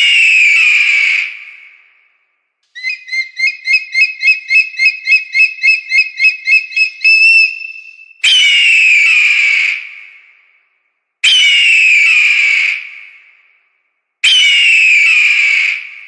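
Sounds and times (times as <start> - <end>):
eagle piping whistled calls: 0.0 - 1.3, 2.8 - 9.6, 11.2 - 12.2, 14.2 - 15.6.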